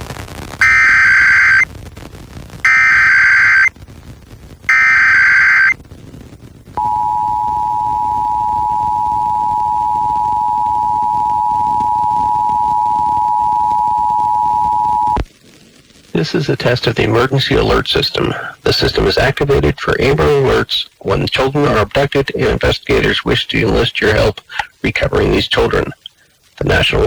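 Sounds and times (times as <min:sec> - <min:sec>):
warbling digital data tones: 0:00.6 - 0:01.6, 0:02.6 - 0:03.7, 0:04.7 - 0:05.8, 0:06.8 - 0:15.2
two-tone alert signal: 0:06.8 - 0:15.2.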